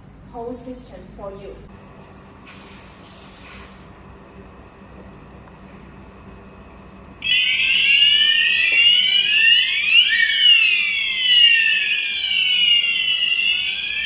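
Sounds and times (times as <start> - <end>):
fire alarm sounders sweeping tones: 7.2 - 14.0.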